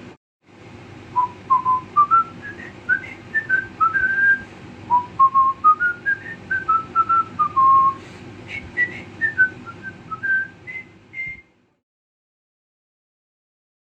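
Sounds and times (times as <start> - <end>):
person whistling a melody: 1.2 - 11.5.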